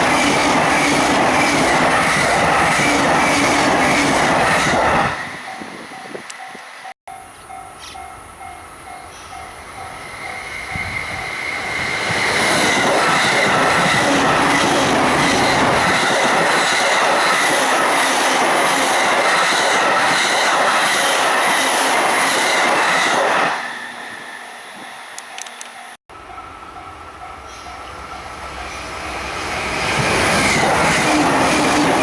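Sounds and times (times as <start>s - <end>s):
electric train passing: 0.0s - 32.0s
level-crossing bell ringing: 5.4s - 11.8s.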